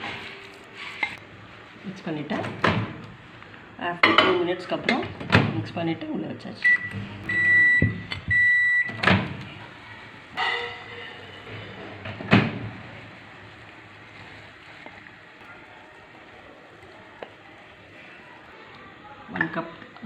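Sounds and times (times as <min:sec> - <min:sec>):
microwave keypad beeping: 0:06.6 - 0:09.0.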